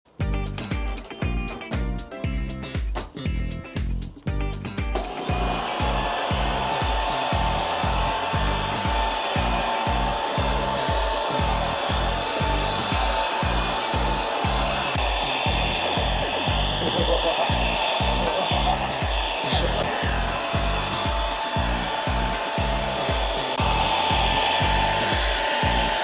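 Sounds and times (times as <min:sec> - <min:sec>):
background music with bass beat: 0:00.1 - 0:26.0
vacuum cleaner running: 0:05.0 - 0:26.0.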